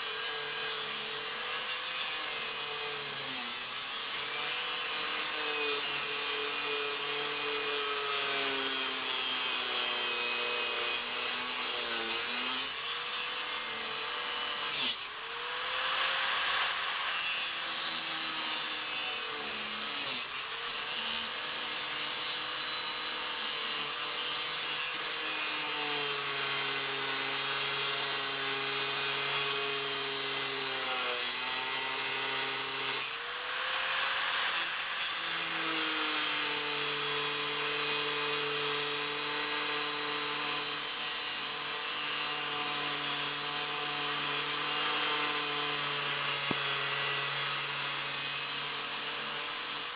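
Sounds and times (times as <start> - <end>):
angle grinder cutting steel: 0.0 - 49.9.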